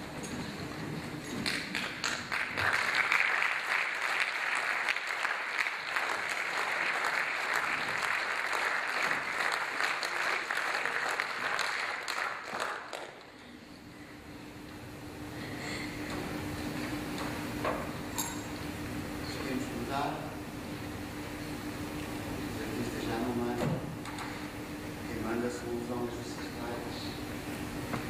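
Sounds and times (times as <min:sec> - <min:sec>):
audience applauding: 0:01.4 - 0:13.4.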